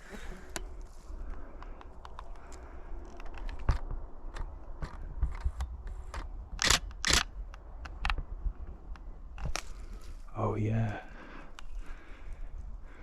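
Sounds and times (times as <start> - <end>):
camera shutter clicks: 6.6 - 7.3.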